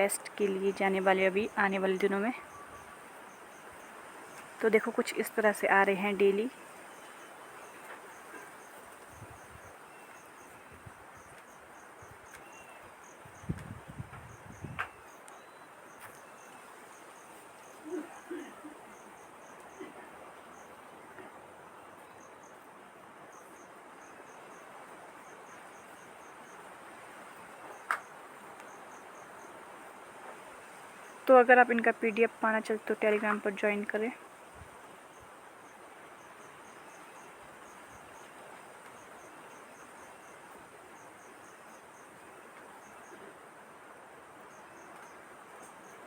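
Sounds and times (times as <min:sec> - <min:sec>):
insect chirping: 0:00.0 - 0:20.8
steady background hiss: 0:00.0 - 0:46.0.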